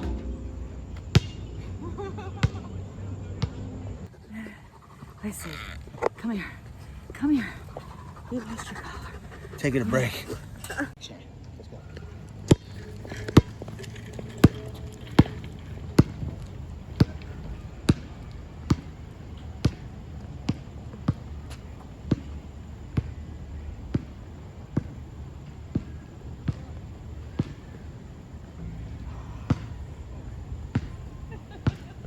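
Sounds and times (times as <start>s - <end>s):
basketball bouncing on a court: 0.0s - 3.7s, 12.5s - 19.0s, 19.6s - 22.4s, 23.9s - 25.0s, 25.7s - 26.7s, 27.3s - 27.8s, 29.0s - 29.8s, 30.7s - 32.0s.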